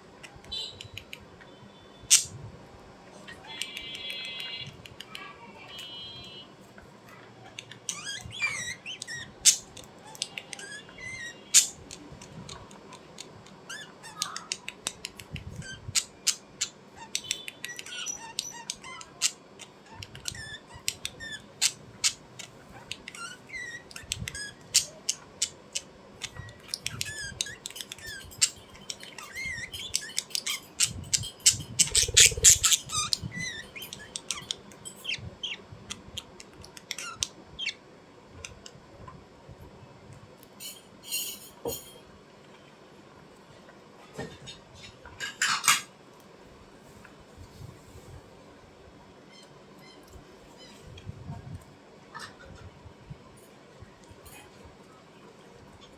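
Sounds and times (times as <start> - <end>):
bird squawking and chirping: 26.3 - 35.6.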